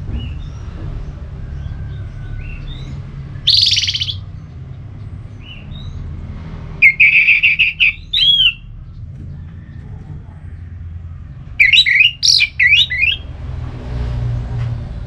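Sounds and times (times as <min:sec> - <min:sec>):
thrush singing: 0:03.5 - 0:04.2, 0:06.8 - 0:08.6, 0:11.6 - 0:13.2.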